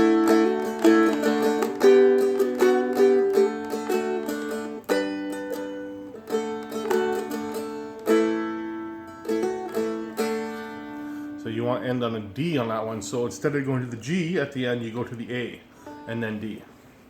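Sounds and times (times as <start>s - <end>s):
picked dulcimer melody: 0.0s - 11.2s
strummed dulcimer chords: 0.0s - 11.2s.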